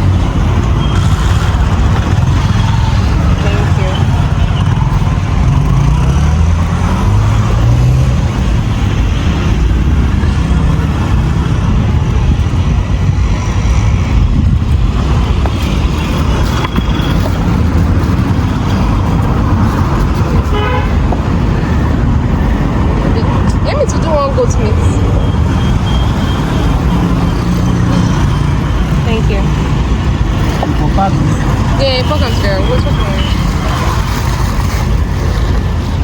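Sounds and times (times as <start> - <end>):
vehicle engines running: 0.0 - 36.0
vehicle horn tooting: 20.4 - 21.8.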